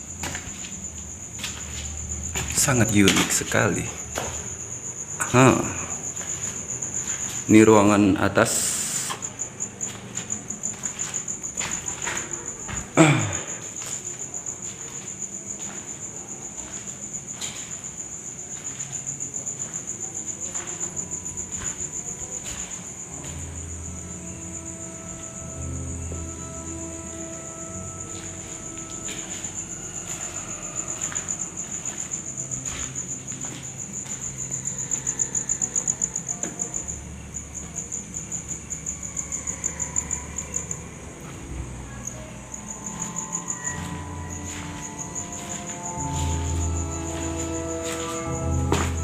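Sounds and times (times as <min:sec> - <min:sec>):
insect trilling: 0:22.8 - 0:49.0.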